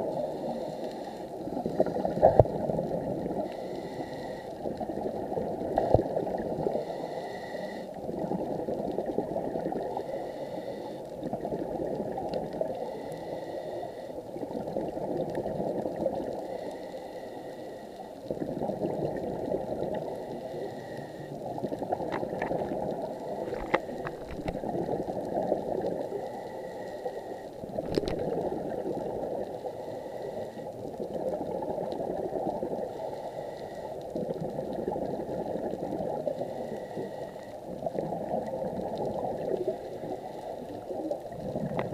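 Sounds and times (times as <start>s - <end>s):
diver breathing underwater: 0.0s - 4.8s, 5.8s - 8.1s, 9.6s - 11.2s, 12.6s - 14.4s, 15.6s - 41.9s
bubbling of exhaled air: 0.0s - 7.0s, 18.2s - 41.9s
faint clicks: 0.1s - 1.3s, 19.0s - 29.6s.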